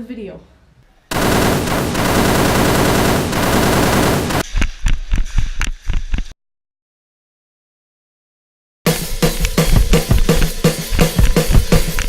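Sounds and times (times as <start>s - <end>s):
automatic gunfire: 1.1s - 4.4s
separate gunshots: 1.1s - 4.4s.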